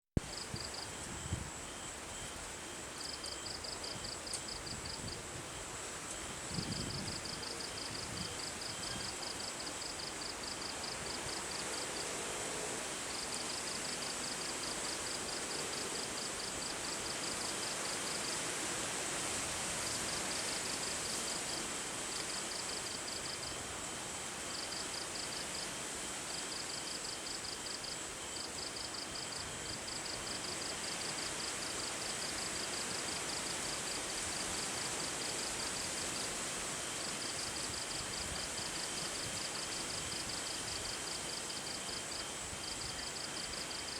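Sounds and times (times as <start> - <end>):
insects chirping: 0.3 - 11.8, 19.8 - 43.9
high insect whine: 0.3 - 43.9
wind bumps on microphone: 0.5 - 1.6, 6.4 - 9.1.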